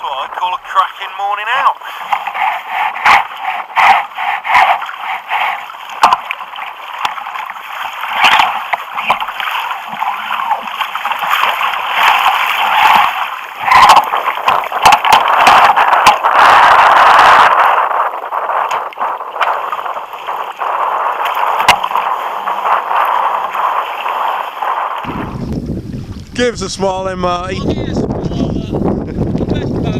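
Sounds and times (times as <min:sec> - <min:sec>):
water splashing around a kayak: 0:00.0 - 0:26.4.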